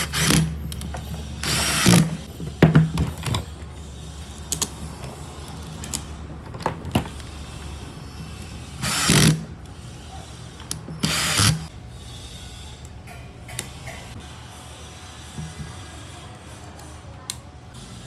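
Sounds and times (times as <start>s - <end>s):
angle grinder bursts: 0.0s - 18.0s
handling clicks and taps: 12.8s - 14.2s.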